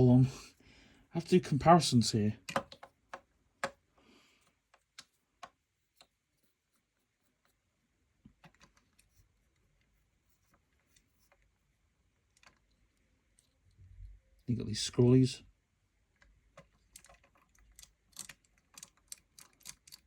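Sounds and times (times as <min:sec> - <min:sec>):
faint plastic clicks of fidget cubes: 0:02.4 - 0:03.8, 0:04.4 - 0:07.6, 0:08.2 - 0:13.8, 0:16.1 - 0:20.0.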